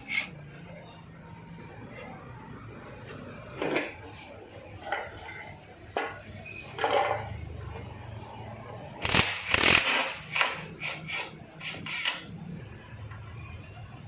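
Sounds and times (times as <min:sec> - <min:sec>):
hand tool rasping on metal: 0:00.0 - 0:00.3.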